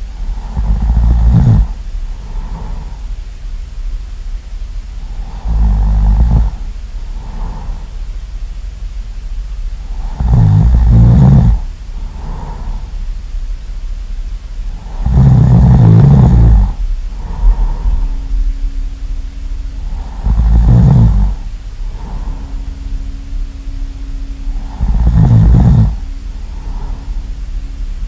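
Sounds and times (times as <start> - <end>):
soft breath: 0.0 - 3.4, 5.0 - 8.2, 9.3 - 13.3, 14.6 - 28.0
loud snoring: 0.2 - 3.0, 5.0 - 7.9, 9.8 - 12.9, 14.7 - 18.3, 19.8 - 22.6, 24.5 - 27.2.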